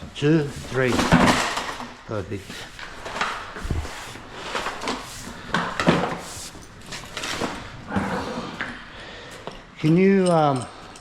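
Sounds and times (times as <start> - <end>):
knocks and clatters of flooring roll: 0.7 - 2.0, 2.9 - 8.8.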